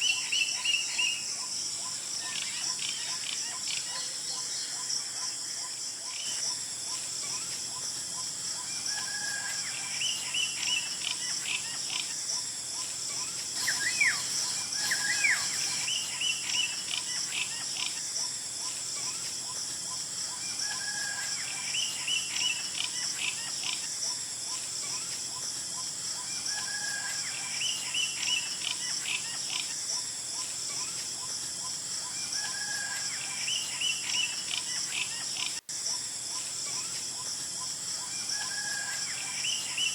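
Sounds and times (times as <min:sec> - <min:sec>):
insects droning: 0:00.0 - 0:39.9
golden oriole calls: 0:13.1 - 0:17.9
swooping whistles: 0:13.6 - 0:16.0.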